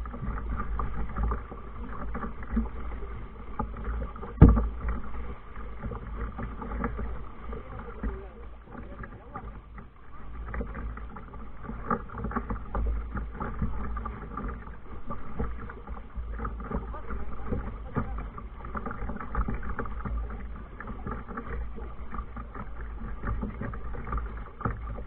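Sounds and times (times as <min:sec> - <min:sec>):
kayak splashes and knocks: 0:00.0 - 0:25.0.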